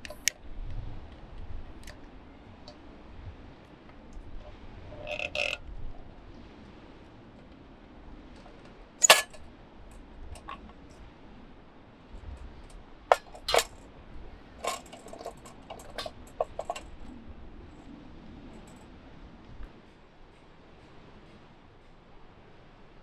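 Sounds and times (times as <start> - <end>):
cookware and utensils clinking: 9.0 - 9.4, 13.1 - 13.8, 14.6 - 16.8.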